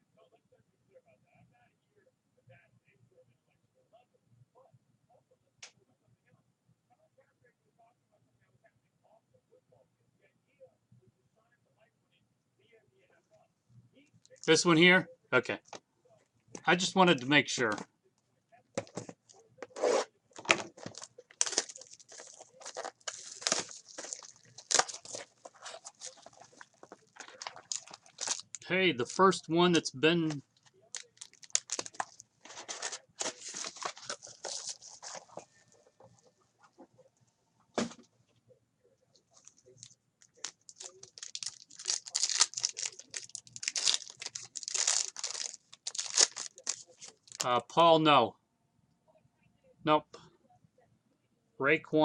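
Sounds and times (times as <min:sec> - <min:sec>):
plastic wrapping crinkling and tearing: 0:19.8 - 0:28.6, 0:30.3 - 0:35.7, 0:39.3 - 0:47.5.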